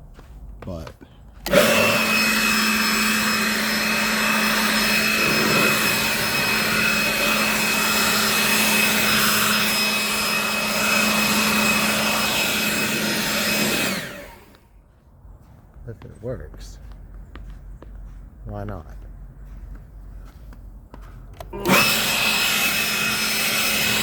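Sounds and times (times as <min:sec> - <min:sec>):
leaf blower running: 0:01.4 - 0:14.6, 0:21.4 - 0:24.0.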